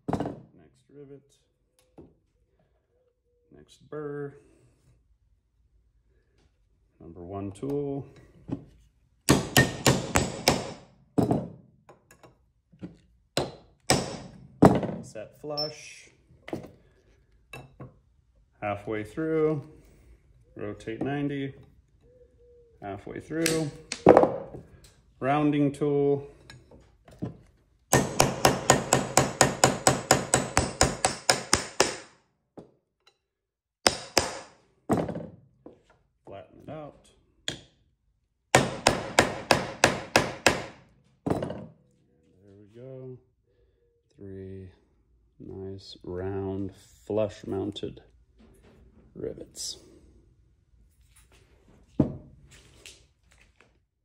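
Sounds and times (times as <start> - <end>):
hammer striking metal tool: 9.3 - 10.8
hammer striking metal rivet tool: 9.3 - 12.4, 13.4 - 15.0, 27.9 - 32.1, 33.8 - 35.3, 37.4 - 37.8, 38.5 - 41.7.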